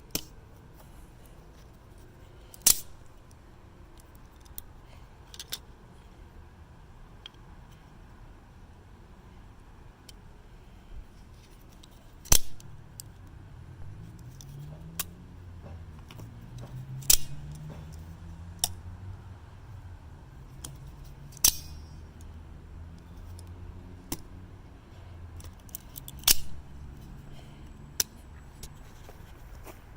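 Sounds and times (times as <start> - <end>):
knife blade metallic snaps: 21.4 - 22.0.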